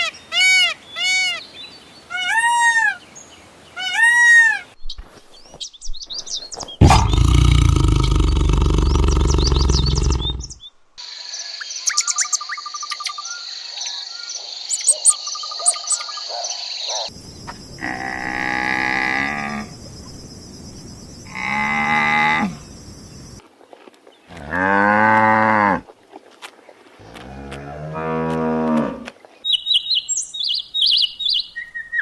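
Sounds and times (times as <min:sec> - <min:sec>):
birds chirping: 0:04.6 - 0:23.4, 0:29.3 - 0:32.0
long low animal calls: 0:06.8 - 0:10.6, 0:21.2 - 0:23.4
insects chirping: 0:06.9 - 0:23.4.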